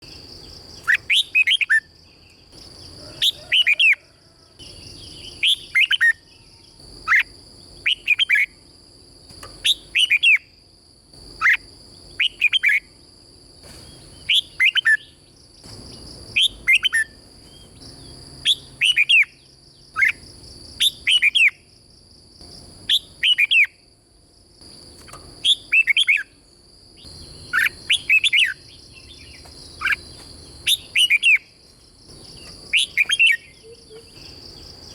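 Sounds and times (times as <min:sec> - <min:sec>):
bird singing whistled notes: 0:00.0 - 0:02.4, 0:04.6 - 0:08.6, 0:09.6 - 0:10.5, 0:12.2 - 0:12.9, 0:13.9 - 0:15.2, 0:15.9 - 0:20.2, 0:20.8 - 0:21.6, 0:22.9 - 0:23.8, 0:25.1 - 0:26.4, 0:27.0 - 0:31.5, 0:32.2 - 0:34.9
steady high-pitched hum: 0:00.0 - 0:34.9.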